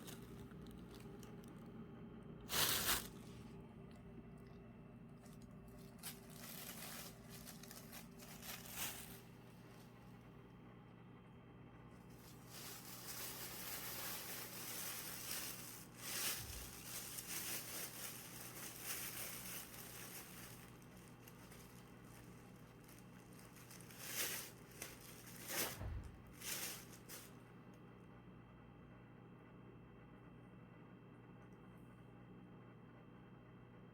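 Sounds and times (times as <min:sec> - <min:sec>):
rustling and crinkling: 0:00.0 - 0:01.8, 0:02.5 - 0:10.1, 0:12.0 - 0:27.4.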